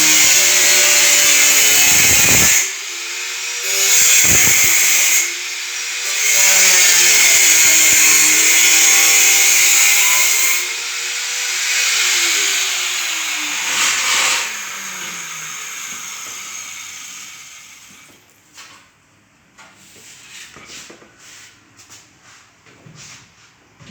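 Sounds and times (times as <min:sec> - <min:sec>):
power tool motor whine: 0:00.0 - 0:18.2.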